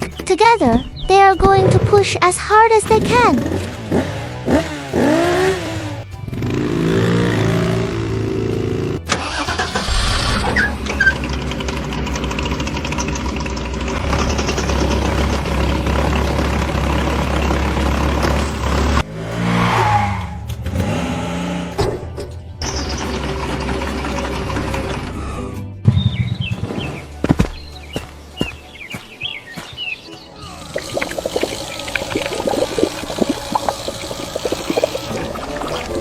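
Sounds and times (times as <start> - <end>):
vehicle engines droning: 2.8 - 25.8.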